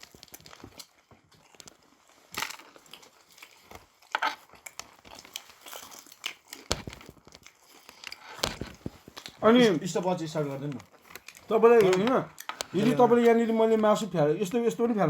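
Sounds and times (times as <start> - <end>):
fried chicken crunching being eaten: 0.0 - 9.4.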